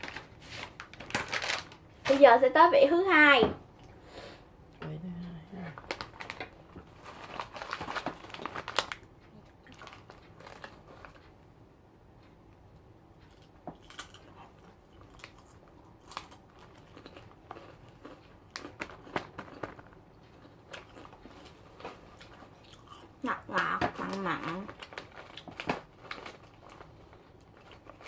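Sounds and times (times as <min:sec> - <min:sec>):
plastic snack bag crinkling: 0:00.0 - 0:02.5, 0:05.8 - 0:09.1, 0:09.7 - 0:11.2, 0:15.0 - 0:28.0.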